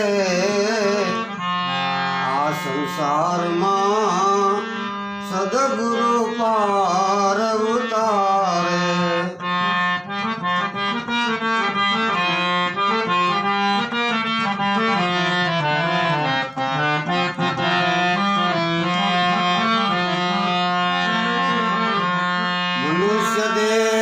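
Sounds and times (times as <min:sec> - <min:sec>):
harmonium melody: 0:00.0 - 0:24.0.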